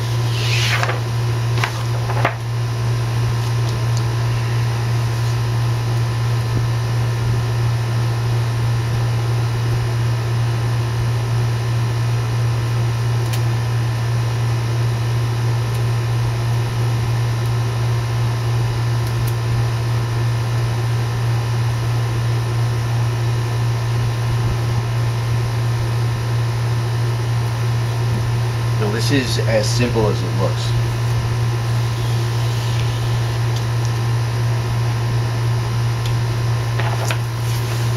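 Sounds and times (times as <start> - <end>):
machine humming with hiss: 0.0 - 9.4, 27.1 - 37.9.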